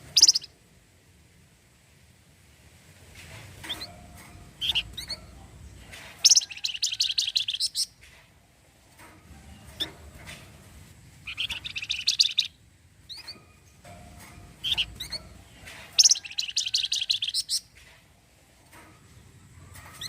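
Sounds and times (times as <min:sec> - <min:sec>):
songbird rattling trills: 0:00.0 - 0:00.5, 0:03.6 - 0:05.4, 0:06.2 - 0:08.0, 0:11.1 - 0:17.8
short rising bird chirps: 0:00.1 - 0:00.5, 0:11.2 - 0:13.3, 0:16.0 - 0:17.6.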